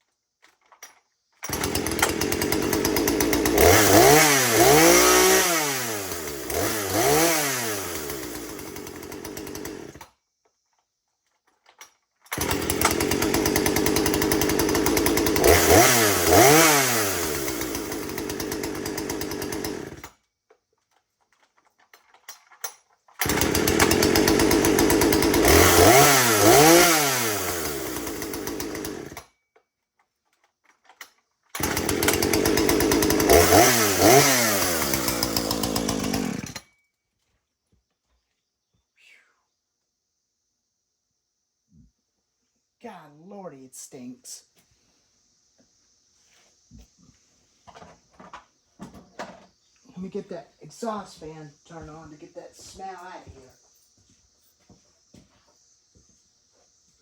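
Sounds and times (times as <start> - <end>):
chainsaw engine revving: 1.4 - 10.0, 12.3 - 20.1, 23.2 - 29.2, 31.6 - 36.6.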